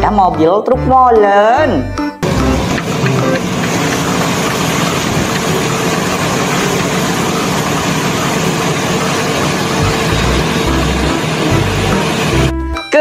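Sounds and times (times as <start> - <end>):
truck engine idling: 2.2 - 12.6.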